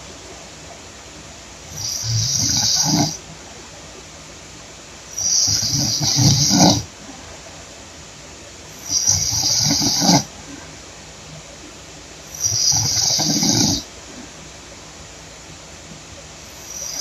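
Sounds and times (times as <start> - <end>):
woman snoring: 1.7 - 3.2, 5.2 - 6.9, 8.8 - 10.3, 12.3 - 13.9, 16.6 - 17.0.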